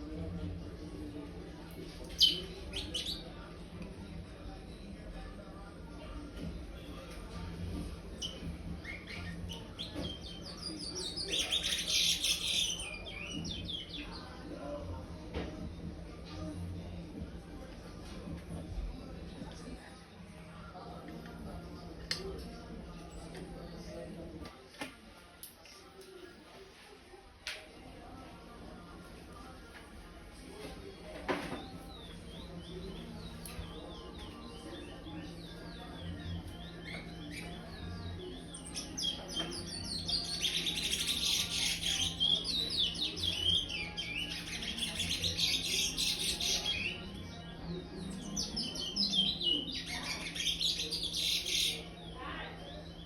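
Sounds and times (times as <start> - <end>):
finch singing whistled notes: 2.1 - 3.2, 8.2 - 14.0
bird singing whistled notes: 2.2 - 3.2.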